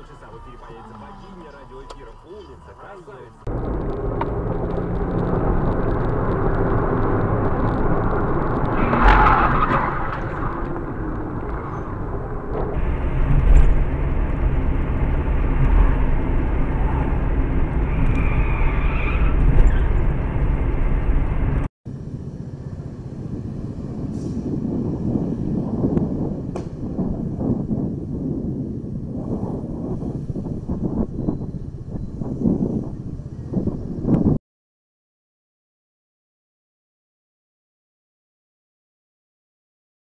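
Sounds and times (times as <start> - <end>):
car engine hum: 0.0 - 27.7
road noise: 0.0 - 34.4.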